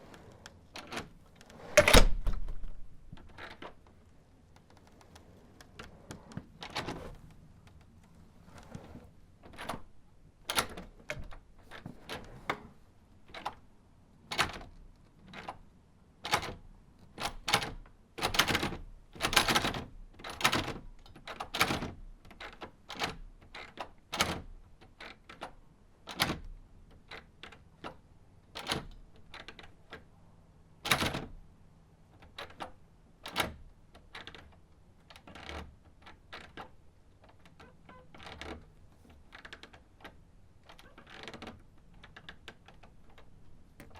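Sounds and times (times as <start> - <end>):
door latch and handle clicking: 0.8 - 3.8.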